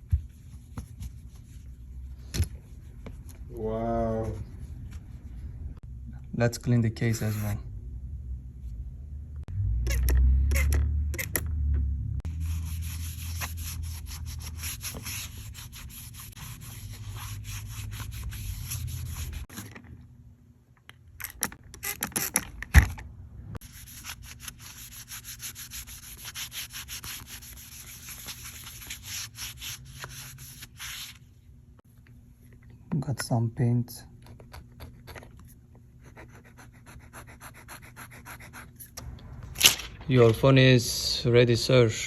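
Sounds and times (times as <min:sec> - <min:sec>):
scrubbing on a phone case: 0:12.3 - 0:19.5, 0:23.6 - 0:31.2.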